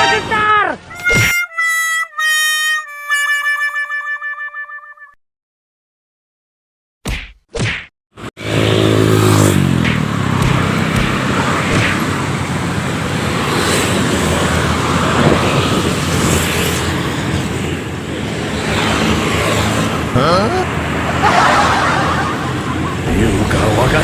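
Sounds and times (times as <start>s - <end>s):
passing traffic: 0.0s - 4.7s, 8.2s - 24.0s
vehicle engine hum: 8.4s - 24.0s.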